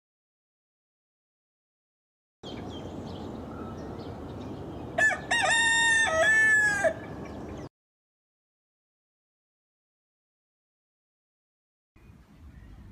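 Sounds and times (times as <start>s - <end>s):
rooster crowing: 5.0s - 7.3s.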